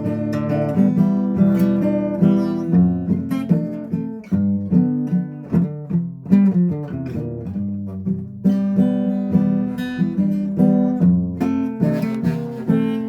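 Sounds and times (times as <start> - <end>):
acoustic guitar chords strummed: 0.0 - 13.0.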